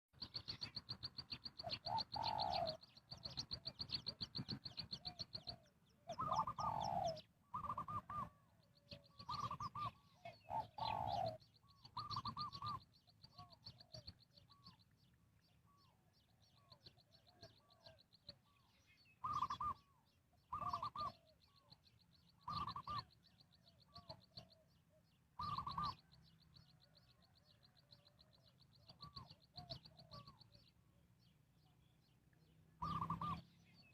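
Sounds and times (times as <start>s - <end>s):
doves cooing: 1.6s - 14.7s, 19.2s - 21.4s, 22.4s - 23.1s, 25.4s - 26.1s, 32.8s - 33.4s.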